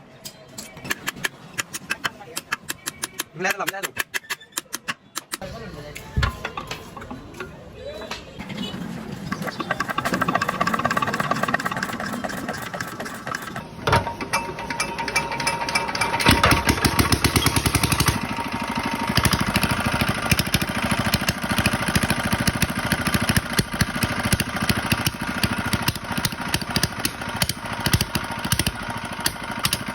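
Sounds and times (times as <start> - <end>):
diesel engine knocking: 15.7 - 29.9.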